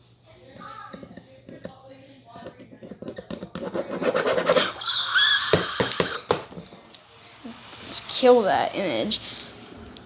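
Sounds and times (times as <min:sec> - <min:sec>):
pen scratching on paper: 0:02.8 - 0:04.8.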